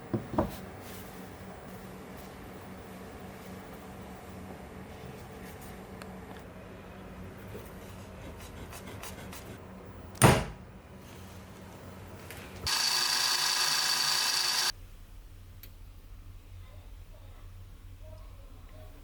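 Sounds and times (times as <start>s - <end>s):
high-pitched gear whine: 12.7s - 14.7s.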